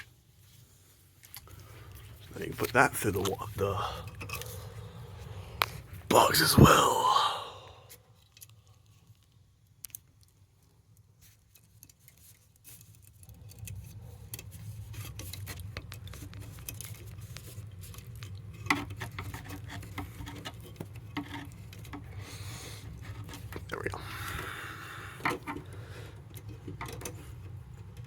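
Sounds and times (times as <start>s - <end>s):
wire clicking and scraping in box: 4.0s - 6.0s, 7.9s - 24.4s, 25.2s - 28.0s.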